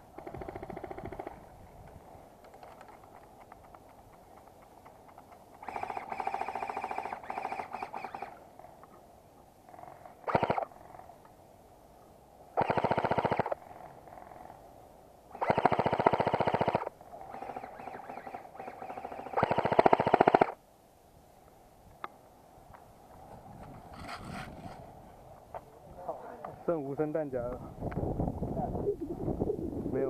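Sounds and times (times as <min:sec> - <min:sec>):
airsoft gun firing bursts: 0:05.6 - 0:08.4, 0:10.2 - 0:10.7, 0:12.6 - 0:13.6, 0:15.3 - 0:20.6.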